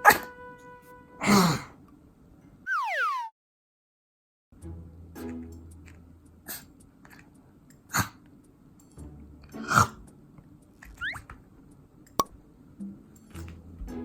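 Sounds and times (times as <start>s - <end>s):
puppy squeaking: 2.7s - 3.3s, 10.9s - 11.3s.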